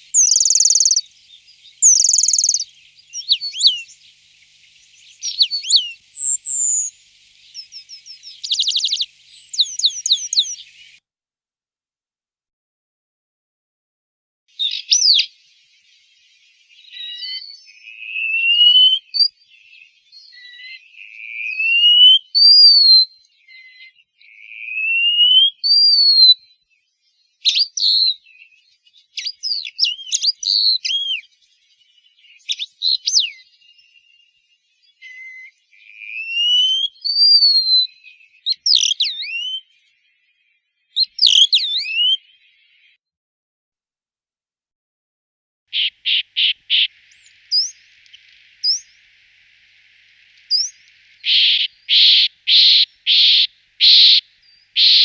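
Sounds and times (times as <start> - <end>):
bird sharp call notes: 0.0 - 11.0, 45.7 - 55.0
songbird whistled notes: 0.0 - 11.0, 14.6 - 23.9, 27.5 - 39.9, 40.9 - 42.9, 45.8 - 49.0, 50.4 - 55.0.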